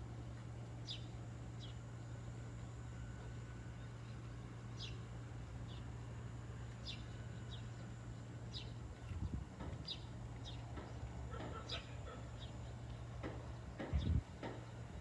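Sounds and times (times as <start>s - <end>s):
wind noise: 9.1s - 9.8s, 13.8s - 14.4s.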